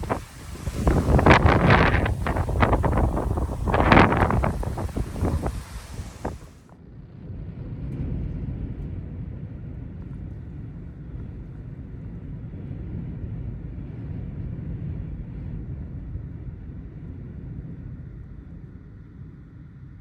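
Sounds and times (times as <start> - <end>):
wind buffeting microphone: 0.0 - 6.6.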